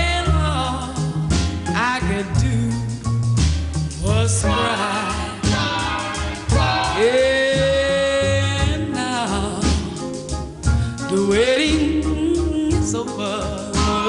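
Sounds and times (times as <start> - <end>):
woman singing soul ballad: 0.0 - 3.1, 4.0 - 14.0
band playing: 1.3 - 14.0
backing singers: 4.3 - 8.8.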